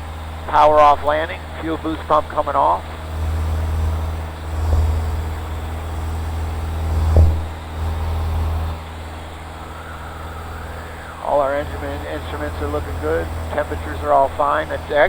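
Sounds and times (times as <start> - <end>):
aircraft engine and propeller droning: 0.0 - 15.0
short knock: 7.1 - 7.5.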